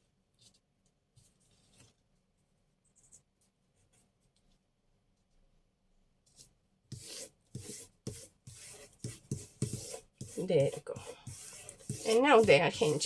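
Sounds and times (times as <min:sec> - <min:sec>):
hand rubbing paper: 0:06.4 - 0:13.0.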